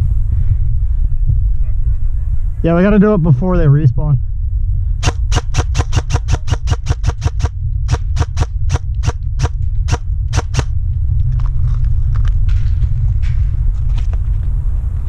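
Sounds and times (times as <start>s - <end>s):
steady low rumble: 0.0s - 15.0s
airsoft rifle shots: 5.0s - 10.7s.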